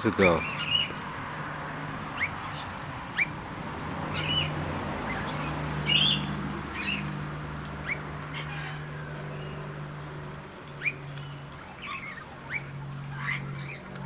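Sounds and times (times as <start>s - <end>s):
birds squawking harshly: 0.0s - 14.0s.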